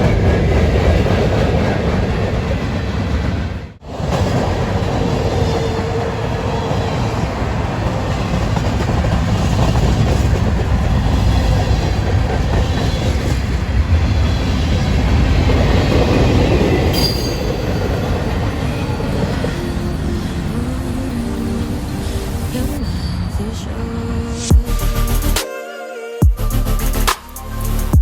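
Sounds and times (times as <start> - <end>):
freight train rumble: 0.0 - 25.4
high wheel squeal: 16.8 - 24.1.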